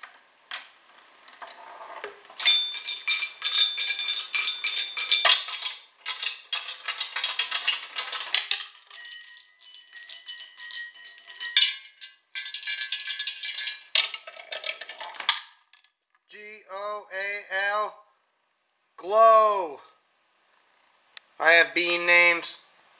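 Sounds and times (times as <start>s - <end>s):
small hard objects clattering: 1.4s - 16.0s.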